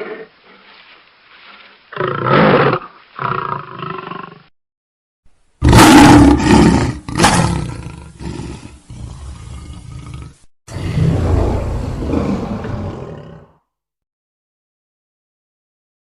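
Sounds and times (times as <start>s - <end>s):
creature roaring: 5.6s - 13.6s.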